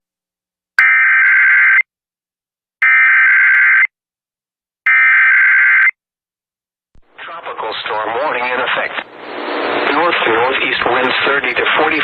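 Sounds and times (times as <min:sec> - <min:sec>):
buzzy digital data tones: 0:09.0 - 0:10.5.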